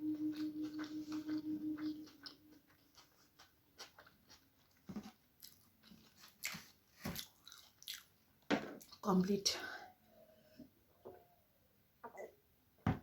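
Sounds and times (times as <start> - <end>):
person chewing food: 0.0 - 8.2.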